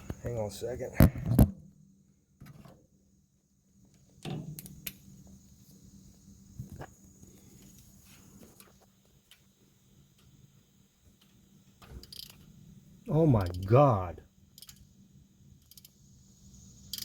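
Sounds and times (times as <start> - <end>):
faint steady high tone: 13.1 - 14.2.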